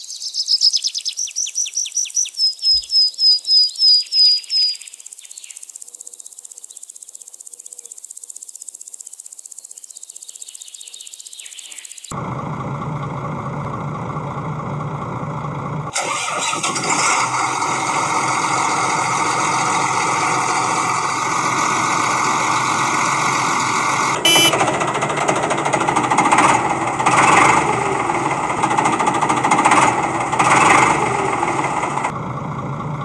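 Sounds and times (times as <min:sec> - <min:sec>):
bird chirping rapidly: 0:00.0 - 0:12.1, 0:24.3 - 0:24.6
insect chorus: 0:00.0 - 0:12.2
vehicle engine running: 0:12.1 - 0:33.0.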